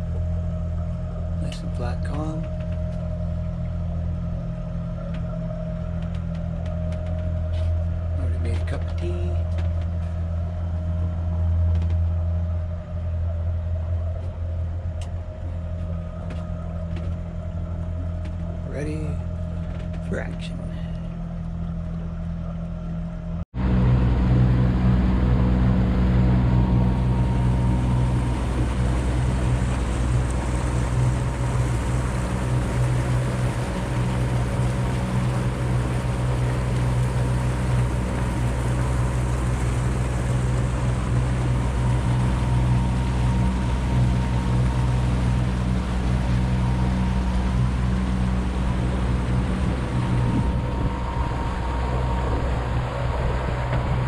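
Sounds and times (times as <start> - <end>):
motorboat engine running: 0.0 - 54.0
wind noise: 23.6 - 54.0
rushing water: 25.2 - 54.0.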